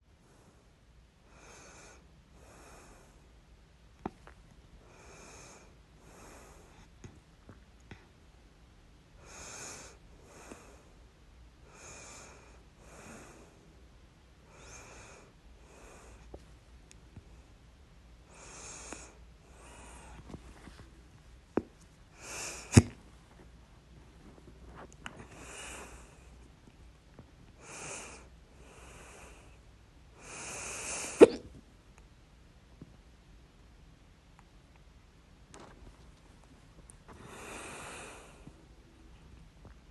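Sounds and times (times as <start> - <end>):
noisy breaths: 0.1 - 3.5, 4.8 - 7.2, 9.2 - 16.6, 17.2 - 26.6, 27.4 - 31.4, 37.0 - 39.4
person breathing in and out: 22.1 - 23.0, 25.1 - 26.4, 27.6 - 29.6, 37.1 - 38.6
person hiccuping: 31.2 - 31.5.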